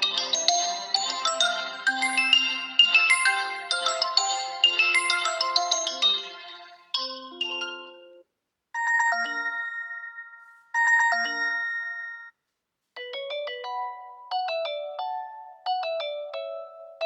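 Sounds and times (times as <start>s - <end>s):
phone ringtones playing: 0.0s - 8.2s, 8.8s - 12.4s.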